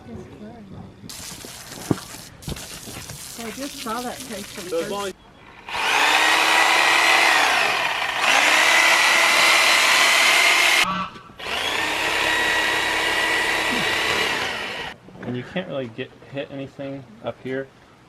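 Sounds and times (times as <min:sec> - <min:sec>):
power tool motor whine: 0:05.6 - 0:15.0.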